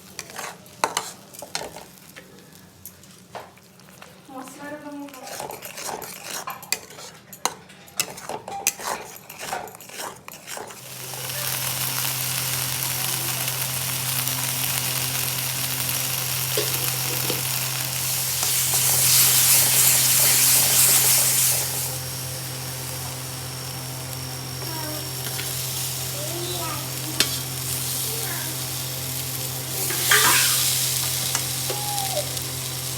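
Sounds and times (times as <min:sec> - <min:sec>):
spatula scraping a pan: 0:00.0 - 0:02.0, 0:03.5 - 0:10.8, 0:27.2 - 0:28.1, 0:29.7 - 0:31.5
food sizzling: 0:10.8 - 0:32.9.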